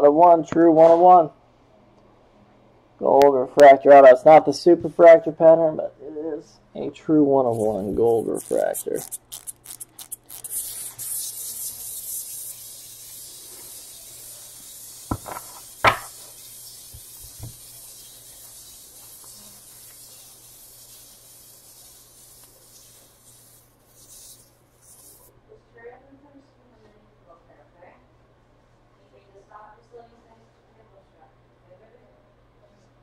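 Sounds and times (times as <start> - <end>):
faint electrical hum: 0.0 - 33.0
cards and plastic holders rustling: 15.1 - 16.2.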